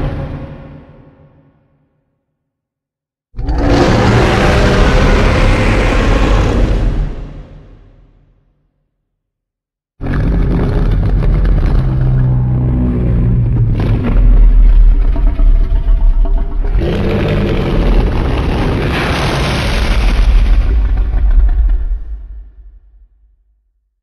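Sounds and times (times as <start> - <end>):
monster roar grinding rumble: 3.4 - 7.4, 10.0 - 22.4.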